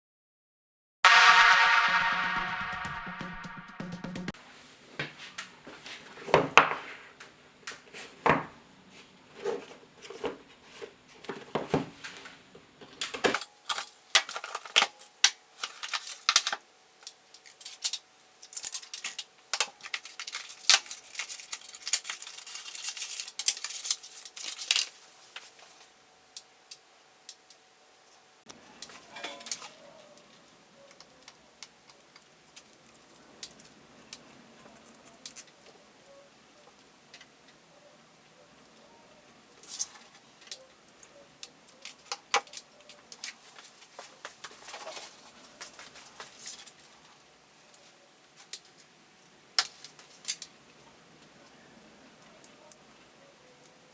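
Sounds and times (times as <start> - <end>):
packaging crackling and scraping: 13.0 - 16.6, 17.4 - 25.9.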